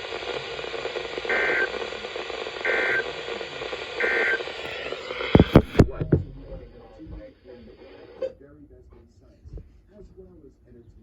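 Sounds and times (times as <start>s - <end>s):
sharp clicks: 0.0s - 6.4s
radio hiss: 0.0s - 11.0s.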